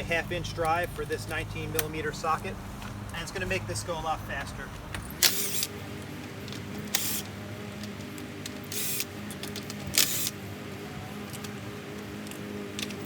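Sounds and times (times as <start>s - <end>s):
impact driver bursts: 5.2s - 5.7s, 6.8s - 7.3s, 8.6s - 9.1s, 9.9s - 10.4s.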